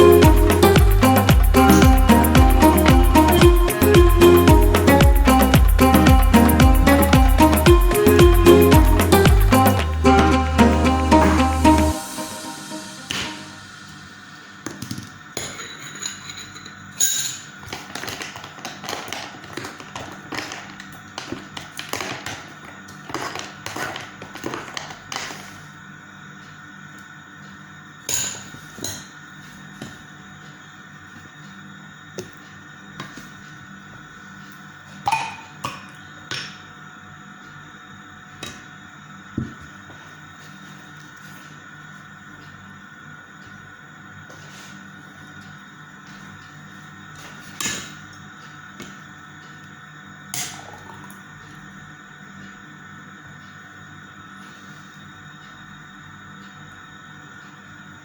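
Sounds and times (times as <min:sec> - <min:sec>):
soft background music: 0:00.0 - 0:14.3
kitchenware clinking: 0:15.4 - 0:17.5.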